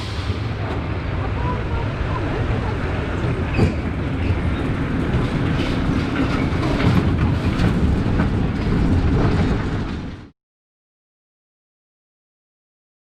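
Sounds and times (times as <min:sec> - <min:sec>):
roller coaster rumbling on track: 0:00.0 - 0:10.3.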